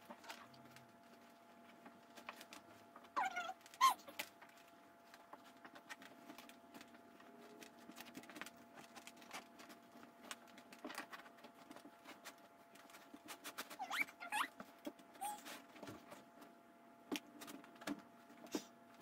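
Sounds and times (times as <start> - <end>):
short squeak: 13.7 - 14.5.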